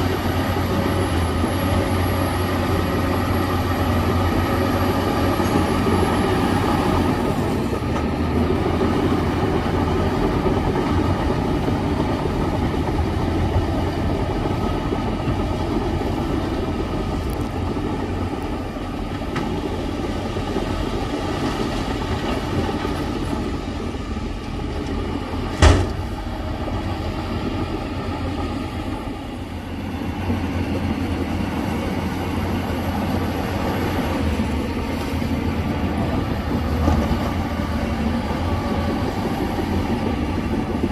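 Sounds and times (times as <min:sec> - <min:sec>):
bulldozer diesel engine running: 0:00.0 - 0:40.9
steel tracks clanking: 0:00.0 - 0:40.9
sharp metallic knock: 0:25.6 - 0:26.1.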